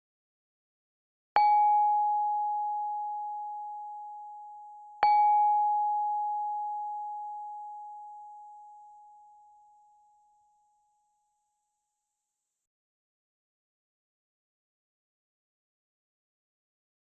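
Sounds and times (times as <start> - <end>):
bell-like ding ringing: 1.4 - 11.3.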